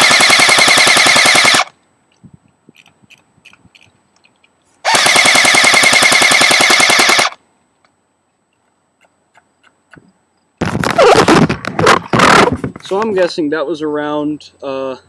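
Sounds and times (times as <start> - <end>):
airsoft gun automatic fire: 0.0 - 1.7, 4.9 - 7.4.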